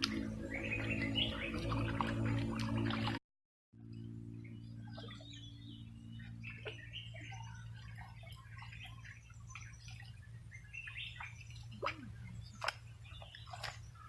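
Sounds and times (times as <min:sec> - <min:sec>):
steady low hum: 0:00.0 - 0:03.2, 0:03.8 - 0:14.0
small birds chirping: 0:04.4 - 0:14.0.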